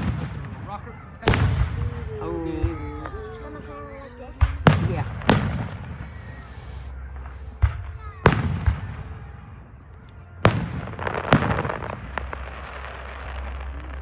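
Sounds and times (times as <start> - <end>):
fireworks bangs: 0.0 - 9.6
fireworks crackling: 1.2 - 9.3
fireworks hissing: 5.2 - 8.4.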